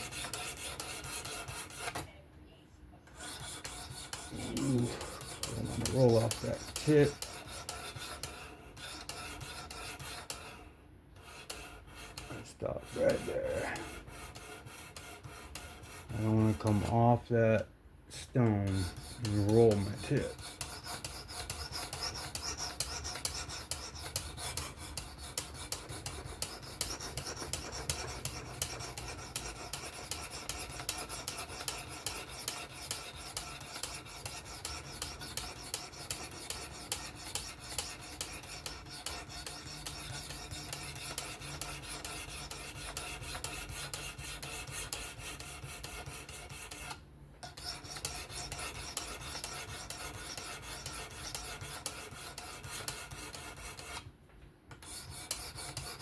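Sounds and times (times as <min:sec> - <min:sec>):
knife scraping on sharpening plate: 0:03.2 - 0:10.6.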